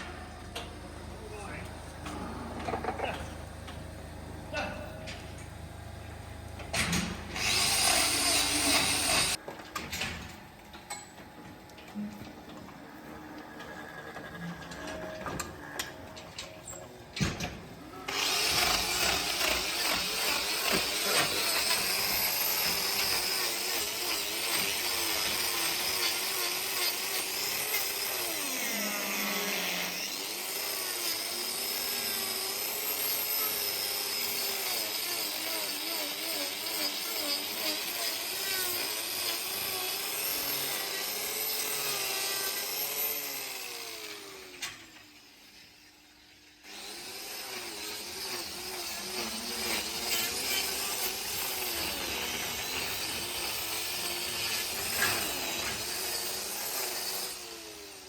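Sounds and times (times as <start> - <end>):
chainsaw cutting wood: 6.8 - 9.4, 18.1 - 44.9, 46.6 - 58.0.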